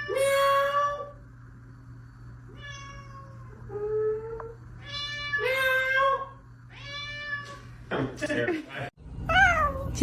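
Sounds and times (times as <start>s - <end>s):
cat meowing: 2.5s - 3.9s, 4.8s - 7.6s, 9.3s - 10.0s.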